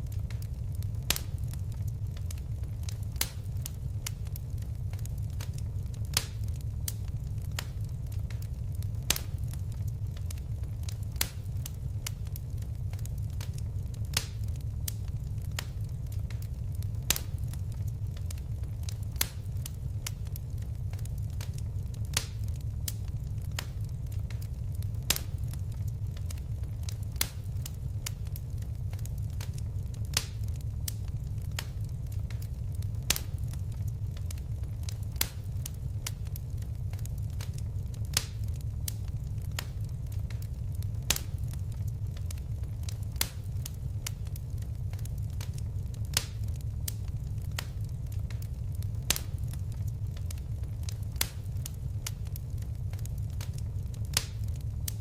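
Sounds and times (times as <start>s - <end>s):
fire crackling in a fireplace: 0.0s - 55.0s.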